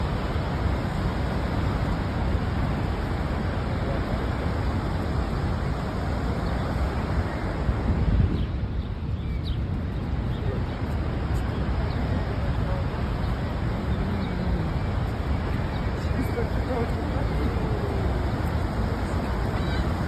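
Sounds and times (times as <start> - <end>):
waterfall rushing: 10.9 - 20.0.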